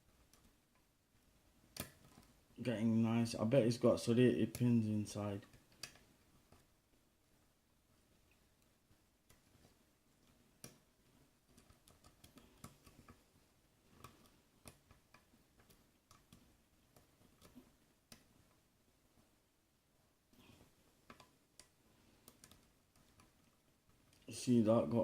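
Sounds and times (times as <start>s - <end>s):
lock pick clicking and scraping: 1.7s - 2.3s, 11.5s - 13.2s, 21.1s - 23.5s.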